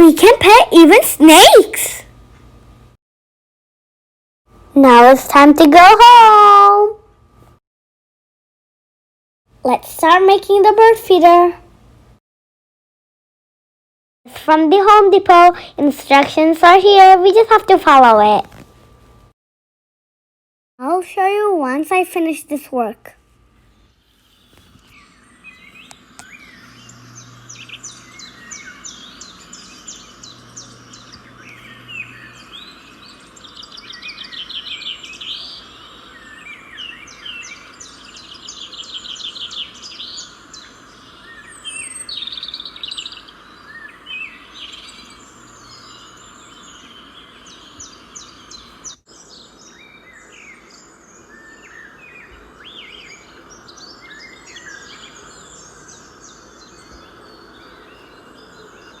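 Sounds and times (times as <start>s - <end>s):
flock of small birds chirping: 23.8s - 59.0s.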